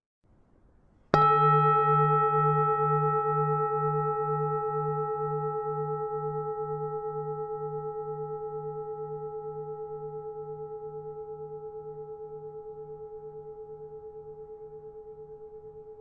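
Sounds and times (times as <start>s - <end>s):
temple bell ringing: 1.2s - 8.6s.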